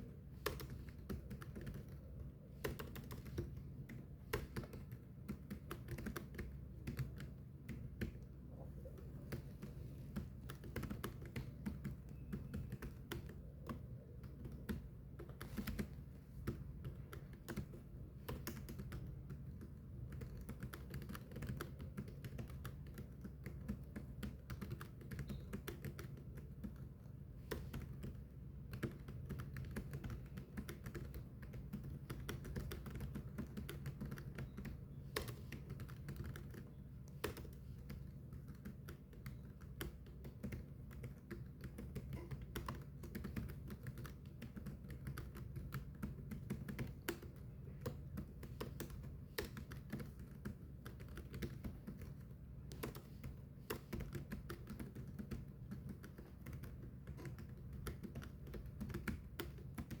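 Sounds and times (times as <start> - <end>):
low steady hum: 0.0 - 60.0
keyboard typing clicks: 0.4 - 60.0.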